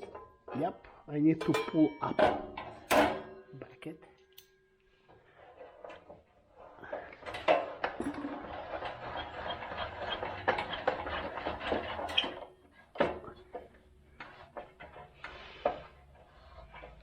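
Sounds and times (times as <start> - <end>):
metal parts scraping rattle: 7.2 - 12.5.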